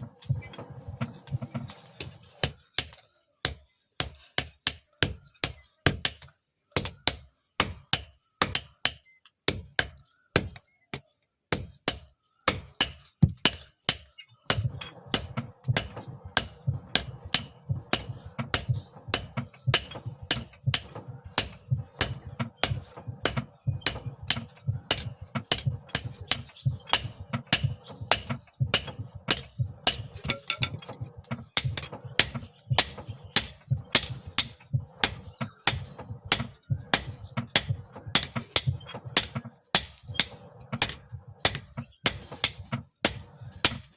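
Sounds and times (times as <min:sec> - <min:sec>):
hammer striking metal on anvil: 0:02.4 - 0:03.0, 0:11.9 - 0:43.9.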